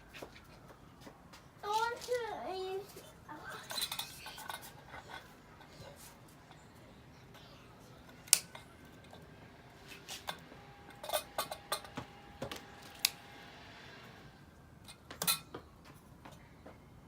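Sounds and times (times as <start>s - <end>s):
metallic clicks and clinks: 3.6s - 5.3s.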